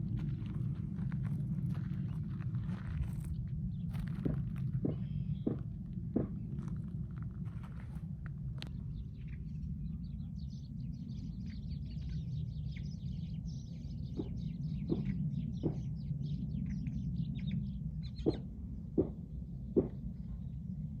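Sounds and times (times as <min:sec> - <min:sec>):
steady low rumble: 0:00.0 - 0:21.0
sharp knocks: 0:04.8 - 0:06.4, 0:14.2 - 0:15.9, 0:19.0 - 0:19.2, 0:19.8 - 0:20.0
flock of small birds chirping: 0:08.6 - 0:18.4.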